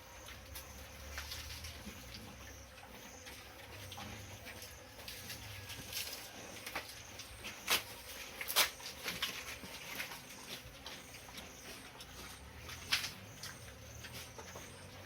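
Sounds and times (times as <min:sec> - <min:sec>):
pigs clicking and rustling: 0:00.0 - 0:15.0.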